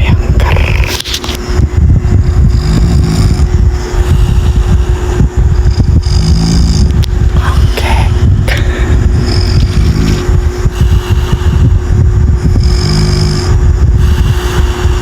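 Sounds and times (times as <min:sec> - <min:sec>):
person snoring loudly: 0:02.4 - 0:04.8, 0:05.6 - 0:15.0.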